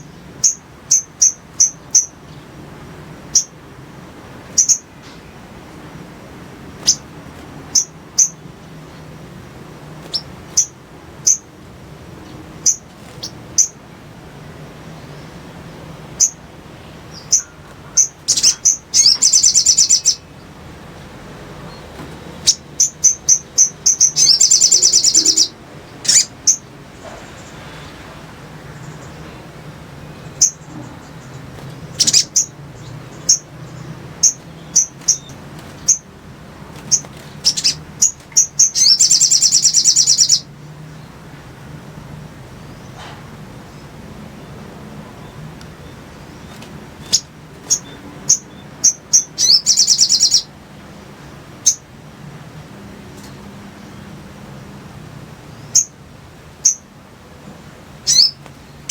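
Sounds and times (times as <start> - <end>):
bird chirping: 0.0 - 2.5, 3.3 - 3.6, 4.4 - 5.2, 6.8 - 7.1, 7.7 - 9.2, 10.0 - 11.5, 12.2 - 13.8, 15.0 - 20.6, 21.6 - 28.0, 28.6 - 36.2, 36.8 - 41.1, 45.2 - 50.5, 51.2 - 51.9, 55.5 - 56.0, 56.6 - 58.9
bird rattling trills: 10.0 - 11.5, 17.1 - 20.4, 22.4 - 26.7, 30.4 - 36.2, 36.8 - 40.4, 58.0 - 58.9.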